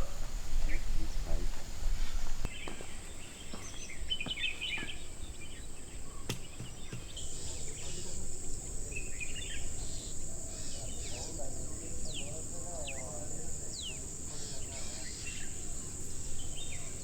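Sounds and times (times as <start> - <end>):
bird chirps: 2.5 - 17.0
insect drone: 3.8 - 17.0.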